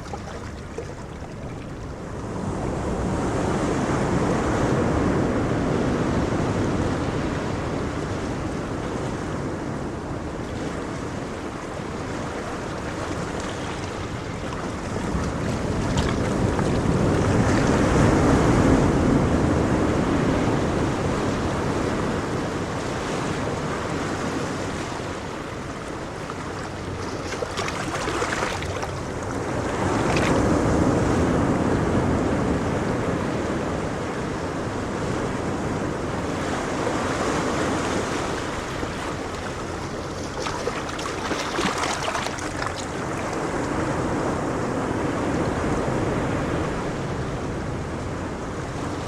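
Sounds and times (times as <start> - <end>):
crisp water splash: 0.0 - 2.1, 12.4 - 17.8, 26.3 - 30.5, 38.4 - 43.6
ocean waves breaking on shore: 0.0 - 49.0.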